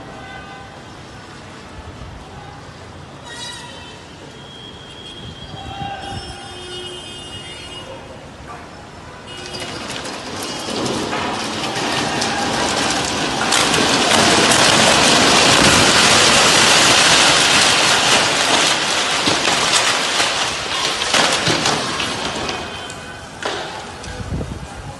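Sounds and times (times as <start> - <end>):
heavy rain pouring: 9.3 - 24.9.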